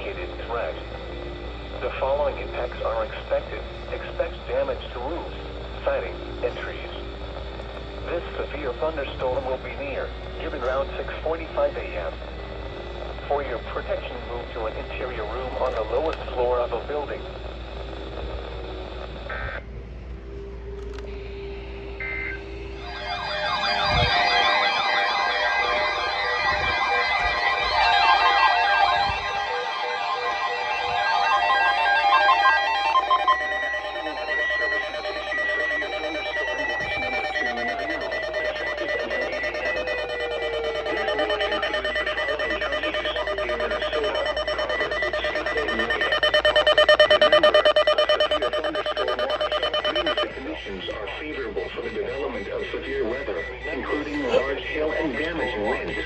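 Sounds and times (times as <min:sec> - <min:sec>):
emergency alarm beeping rapidly: 0:00.0 - 0:17.6, 0:22.0 - 0:50.4
two-tone electronic data warble: 0:00.0 - 0:19.3, 0:22.0 - 0:50.4
siren-like warbling sound: 0:22.9 - 0:50.3.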